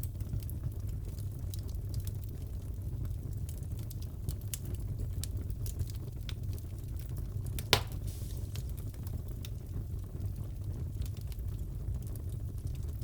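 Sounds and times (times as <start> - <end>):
fire rumbling and crackling: 0.0 - 13.0
loud pop of fire: 7.6 - 9.0.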